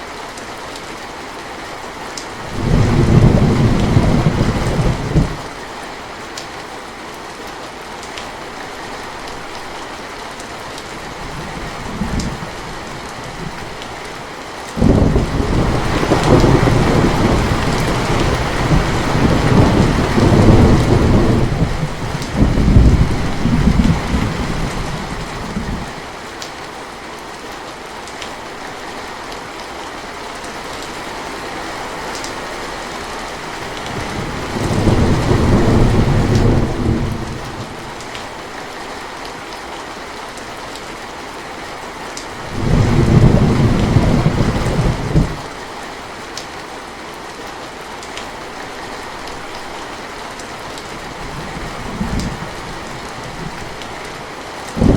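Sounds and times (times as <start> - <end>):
steady rain: 0.0 - 54.9
thunder rumbling: 2.4 - 5.5, 11.1 - 14.1, 14.8 - 26.0, 33.6 - 38.3, 42.4 - 45.5, 51.0 - 54.1.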